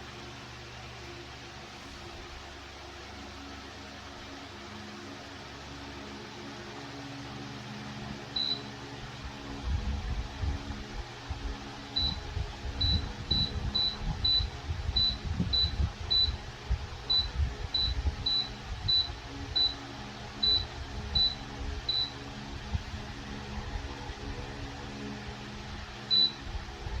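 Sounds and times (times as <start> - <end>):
fan humming: 0.0 - 27.0
low rumble: 8.1 - 27.0.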